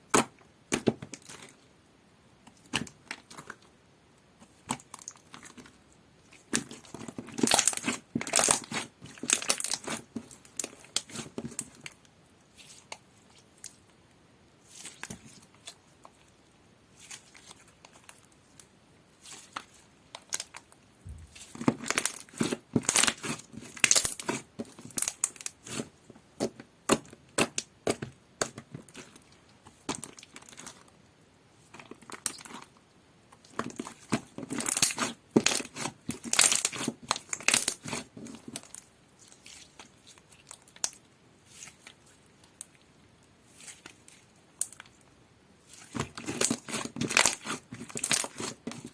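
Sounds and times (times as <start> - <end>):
slime crackling and popping: 6.3 - 11.9, 19.3 - 30.8, 31.7 - 32.8, 33.4 - 38.8, 45.7 - 48.9.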